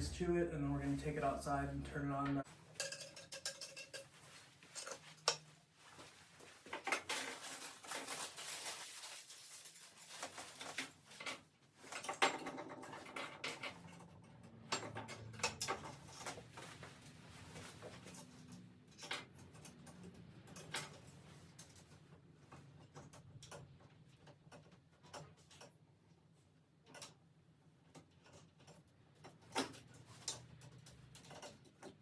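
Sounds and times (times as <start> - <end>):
rustling of parts: 2.4 - 32.0
parts clicking and knocking: 2.6 - 5.5, 10.6 - 16.9, 17.5 - 25.9, 26.7 - 32.0.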